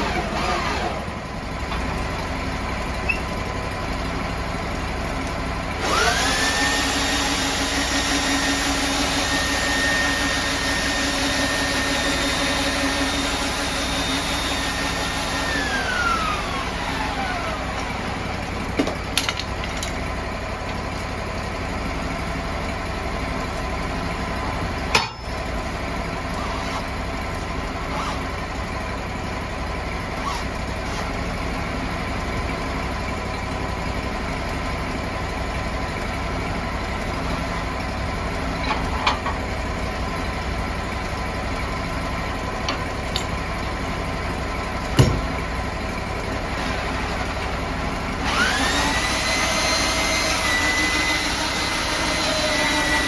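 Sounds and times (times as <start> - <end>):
sawmill engine running: 0.0 - 53.0
log knocks and clanks: 45.0 - 45.4.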